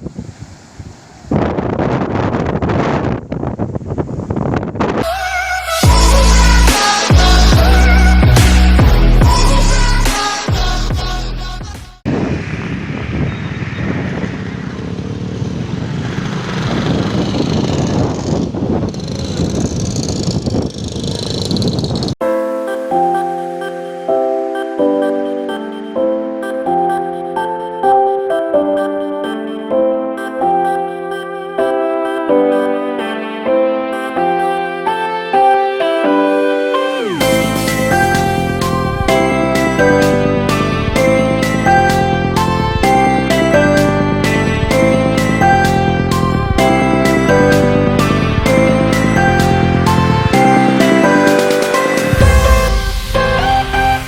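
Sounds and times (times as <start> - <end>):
instrumental music with steady beat: 33.1 - 54.0.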